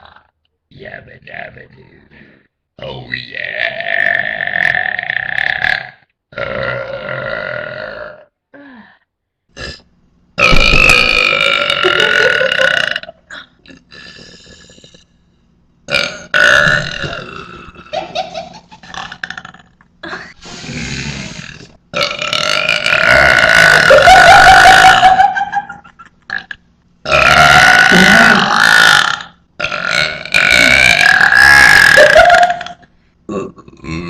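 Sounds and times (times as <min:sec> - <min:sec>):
person burping loudly: 0:03.4 - 0:08.4, 0:09.5 - 0:15.2, 0:15.9 - 0:18.1, 0:18.8 - 0:25.3, 0:26.3 - 0:34.0.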